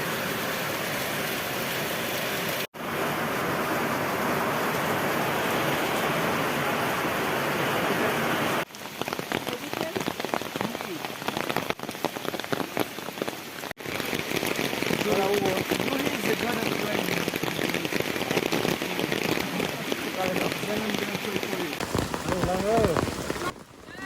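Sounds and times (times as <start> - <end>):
heavy rain hissing: 2.8 - 8.7, 13.6 - 24.0
rain drops pattering: 8.6 - 24.0.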